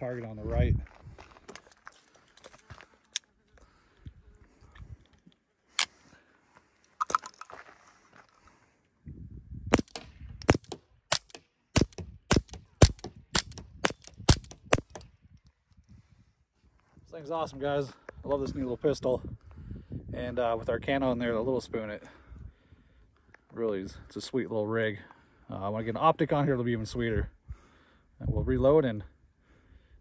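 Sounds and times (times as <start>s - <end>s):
suppressed pistol shots: 9.7s - 15.1s.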